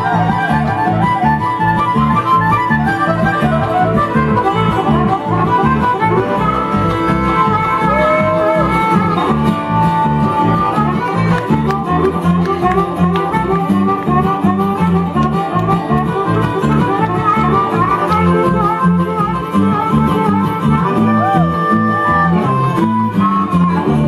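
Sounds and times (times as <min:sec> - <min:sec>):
fiddle melody: 0:00.0 - 0:24.0
guitar: 0:00.0 - 0:24.0.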